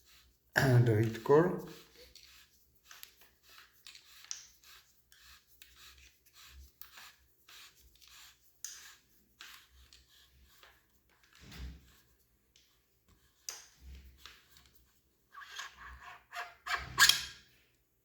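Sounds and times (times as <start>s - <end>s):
threaded metal parts scraping: 15.4s - 17.5s.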